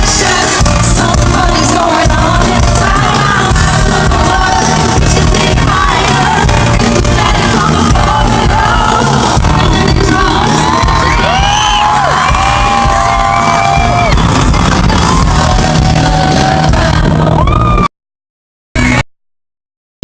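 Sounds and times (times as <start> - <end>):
live pop music with vocals: 0.0 - 17.9
fans shouting along: 7.4 - 17.9.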